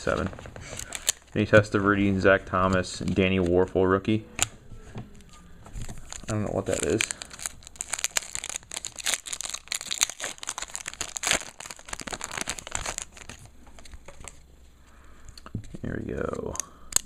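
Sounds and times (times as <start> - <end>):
card pack wrapper tearing and crinkling: 0.6 - 1.3, 5.2 - 14.4.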